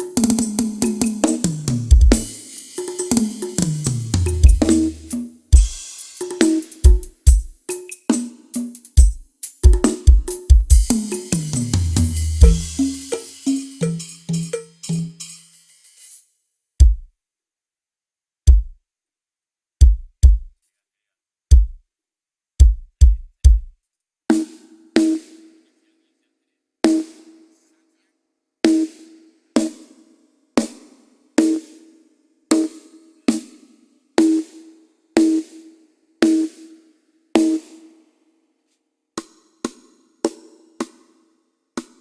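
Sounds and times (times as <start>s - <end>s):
drum fill with cymbal ringing: 0.0s - 16.2s
bass drum kicks: 4.4s - 4.9s, 12.4s - 12.9s, 16.8s - 17.1s, 18.5s - 18.8s, 19.8s - 20.5s, 21.5s - 21.8s, 22.6s - 23.7s
snare drum strokes: 9.8s - 16.2s.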